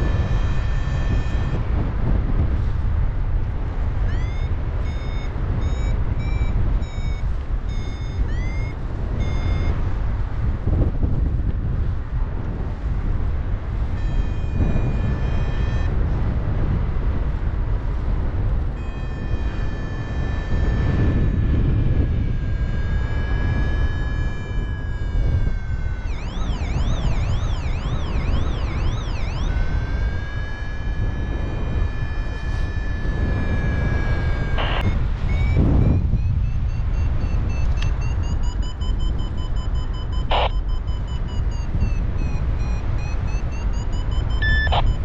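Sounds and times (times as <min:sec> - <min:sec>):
whistle-like electronic tone: 0:00.0 - 0:01.6, 0:04.1 - 0:09.9, 0:14.0 - 0:15.9, 0:18.8 - 0:45.0
wind rushing over microphone: 0:00.0 - 0:45.0.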